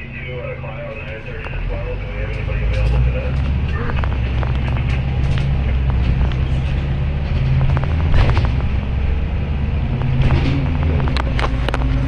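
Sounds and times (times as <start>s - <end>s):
vehicle engine hum and road noise: 0.0s - 12.0s
clicks and rattles: 2.3s - 8.8s, 9.9s - 12.0s.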